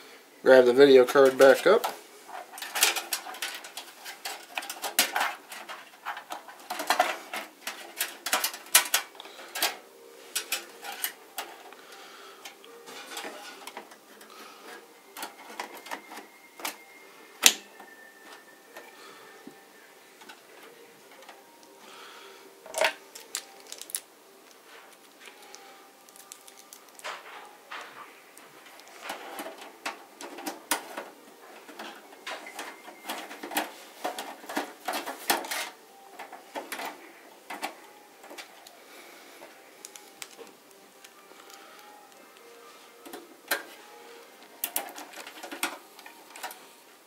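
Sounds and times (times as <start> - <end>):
computer parts clicking and knocking: 1.1 - 9.8, 28.7 - 38.7, 44.6 - 46.6.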